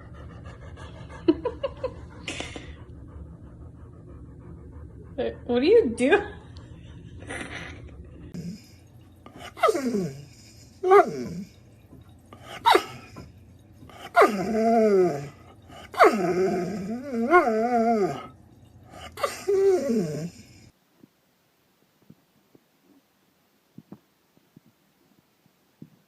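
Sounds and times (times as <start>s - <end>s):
dog howling: 9.6s - 11.6s, 14.1s - 18.3s.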